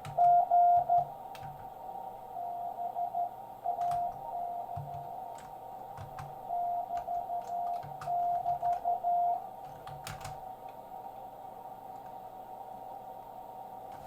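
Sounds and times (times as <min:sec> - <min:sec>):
morse code tone: 0:00.0 - 0:01.2, 0:02.4 - 0:05.4, 0:06.4 - 0:09.5
faint steady tone: 0:00.0 - 0:14.0
radio band noise hiss: 0:00.0 - 0:14.0.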